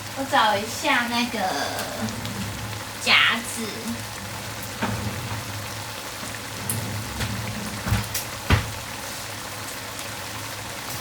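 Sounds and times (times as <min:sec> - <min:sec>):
sauce bubbling and sizzling in pan: 0:00.0 - 0:11.0.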